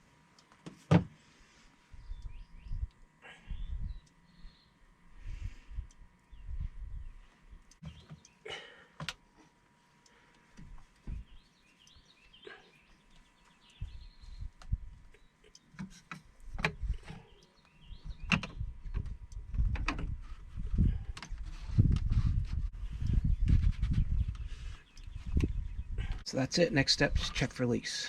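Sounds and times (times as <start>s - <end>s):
birds chirping: 1.9s - 8.9s, 10.0s - 19.4s, 22.9s - 28.0s.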